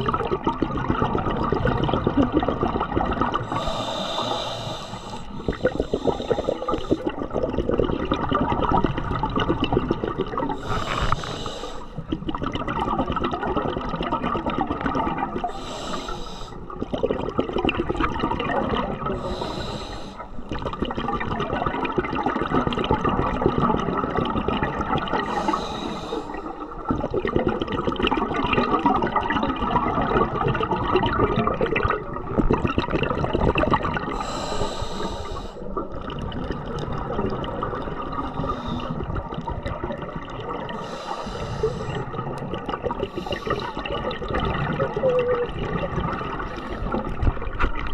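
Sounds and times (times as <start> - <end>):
bubbling exhaust bubbles: 0.0 - 4.4, 5.4 - 15.8, 16.6 - 19.7, 20.4 - 34.5, 35.7 - 47.9
regulator inhale hiss: 3.5 - 7.1, 10.6 - 12.0, 15.5 - 16.7, 19.2 - 20.5, 25.2 - 26.7, 34.1 - 35.8, 38.2 - 39.2, 40.7 - 42.2, 43.0 - 43.9.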